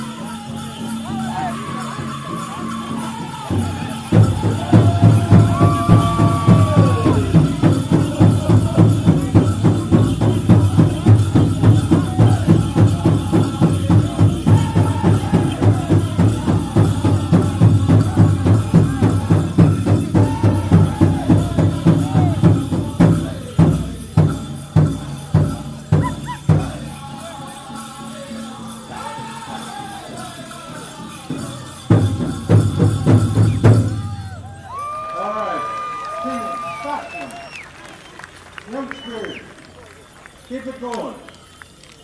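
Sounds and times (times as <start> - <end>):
group singing: 0.0 - 34.2
high lead singer: 0.0 - 37.3
big drum steady fast beat: 2.9 - 27.2, 31.0 - 34.5.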